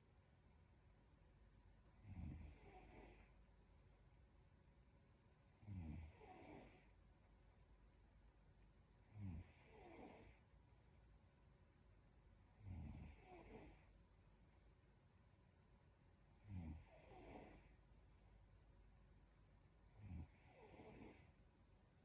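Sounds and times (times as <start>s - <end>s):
woman snoring softly: 2.0s - 3.4s, 5.5s - 7.0s, 9.0s - 10.5s, 12.5s - 14.0s, 16.3s - 17.8s, 19.9s - 21.4s.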